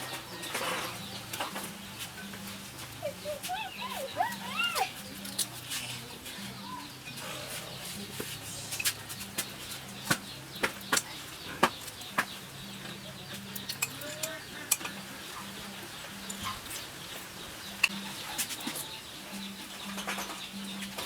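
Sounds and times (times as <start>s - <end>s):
cutlery clinking against dishes: 0.0s - 3.0s, 5.0s - 15.6s, 17.8s - 19.0s.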